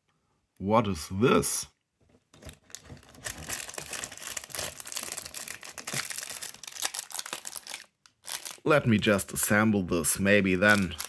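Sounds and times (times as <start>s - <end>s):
plastic bag crinkling: 2.3s - 9.2s, 10.6s - 11.0s.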